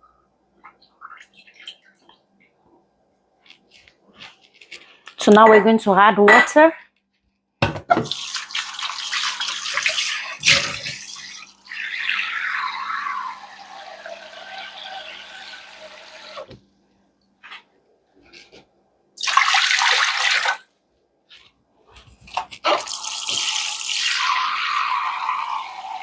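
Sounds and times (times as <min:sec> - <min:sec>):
water pouring into pot: 0:08.1 - 0:16.5, 0:19.2 - 0:20.6, 0:22.7 - 0:26.0.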